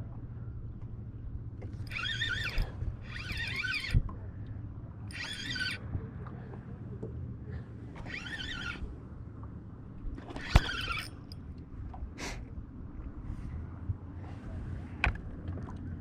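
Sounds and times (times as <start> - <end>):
steady low rumble: 2.5 - 8.0, 8.8 - 16.0.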